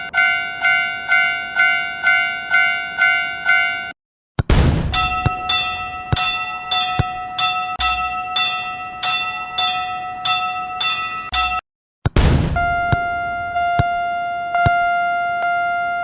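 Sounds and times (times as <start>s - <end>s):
railroad crossing bell ringing: 0.0s - 3.9s, 4.9s - 11.6s
different bell tone: 4.9s - 11.6s.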